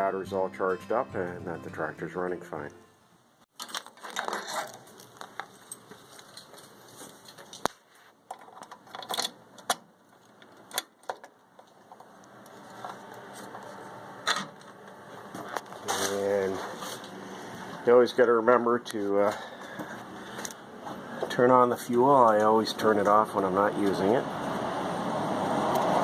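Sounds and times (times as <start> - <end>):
faint handling rustle: 14.9 - 17.8.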